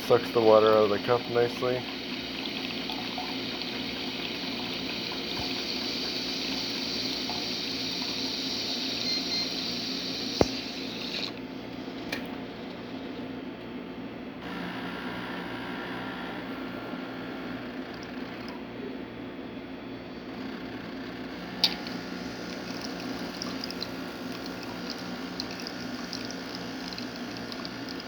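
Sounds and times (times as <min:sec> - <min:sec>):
steam frother hissing and gurgling: 0:00.0 - 0:11.4, 0:20.3 - 0:28.0
steady machine hum: 0:00.0 - 0:28.0.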